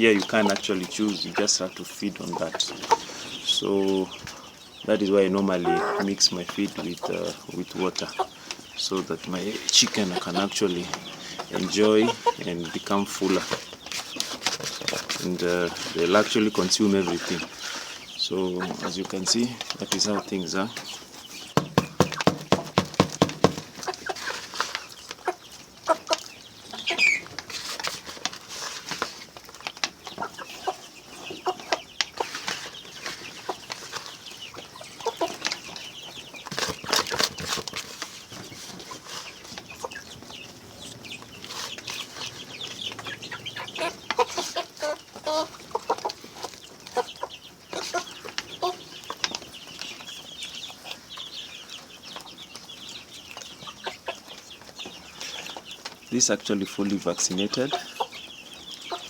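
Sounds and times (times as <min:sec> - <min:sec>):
chickens clucking: 0:00.0 - 0:59.0
chickens pecking taps: 0:00.0 - 0:59.0.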